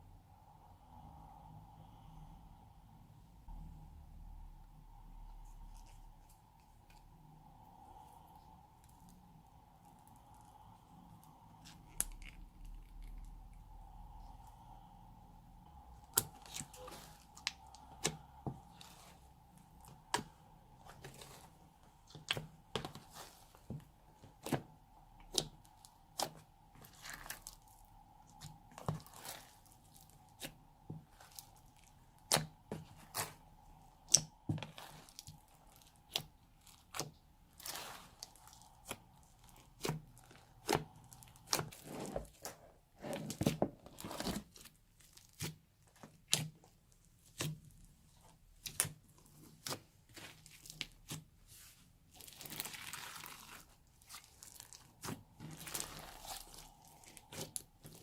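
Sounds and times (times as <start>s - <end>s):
faint steady hum: 0.0s - 58.0s
slime popping and crackling: 52.1s - 58.0s.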